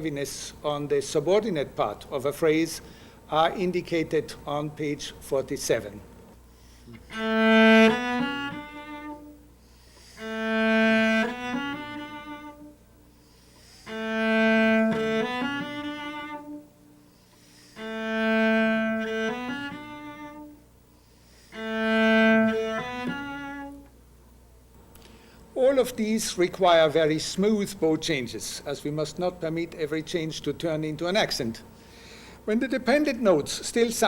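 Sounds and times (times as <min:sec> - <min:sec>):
cello playing bowing exercise: 0:06.6 - 0:24.1.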